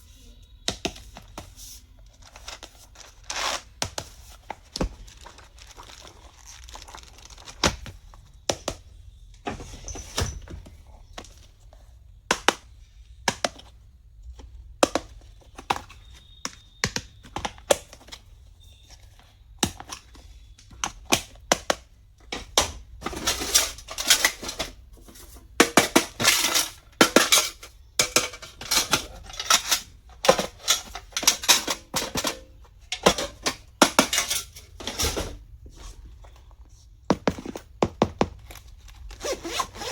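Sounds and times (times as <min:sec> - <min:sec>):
stationery packaging clicks and taps: 0:00.6 - 0:01.5, 0:03.8 - 0:08.9, 0:12.3 - 0:18.2, 0:19.6 - 0:22.9
plastic packaging rustling: 0:02.0 - 0:08.4.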